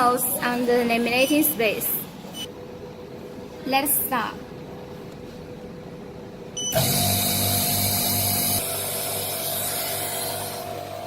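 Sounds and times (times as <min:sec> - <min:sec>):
machine humming: 0:04.5 - 0:11.0.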